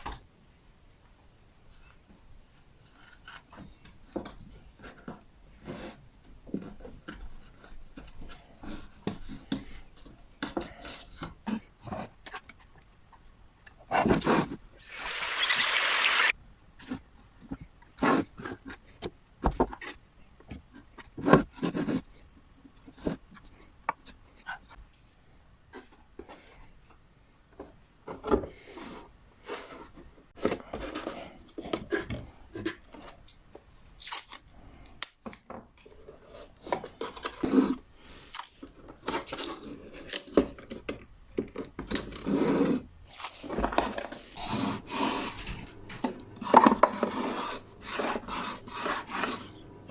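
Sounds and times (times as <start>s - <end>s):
wood scraping and rubbing: 14.0s - 16.3s, 43.5s - 49.9s.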